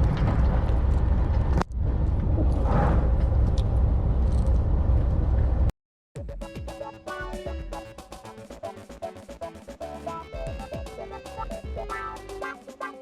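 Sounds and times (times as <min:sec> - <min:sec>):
wind and boat engine rumble: 0:00.0 - 0:05.7
background music: 0:06.2 - 0:13.0.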